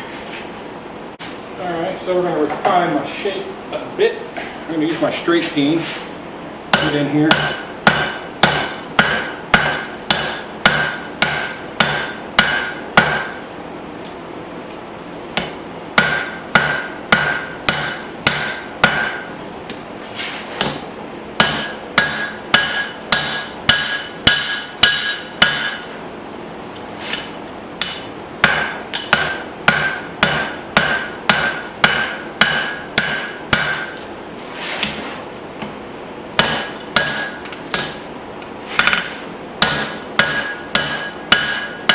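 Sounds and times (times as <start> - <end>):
hammer ringing on anvil: 6.8 - 13.4, 16.0 - 19.3, 21.4 - 25.8, 27.8 - 34.0, 36.4 - 37.9, 39.6 - 41.9.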